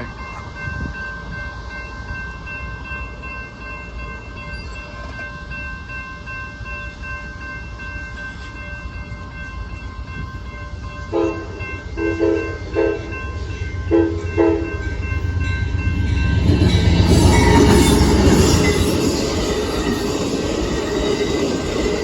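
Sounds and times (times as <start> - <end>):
train rumbling past: 0.0 - 22.0
locomotive horn blasts: 11.1 - 13.1.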